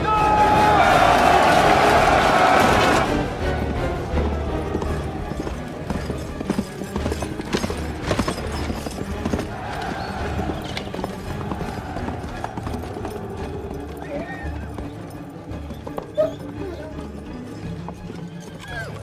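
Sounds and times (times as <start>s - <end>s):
film soundtrack music: 0.0s - 19.0s
horses' hooves clattering: 0.0s - 19.0s.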